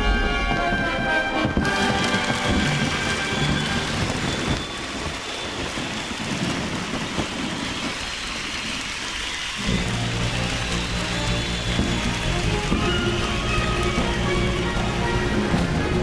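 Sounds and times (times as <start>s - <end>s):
music: 0.0s - 4.6s, 9.6s - 16.0s
fireworks booming: 0.0s - 16.0s
fireworks crackling: 0.0s - 16.0s.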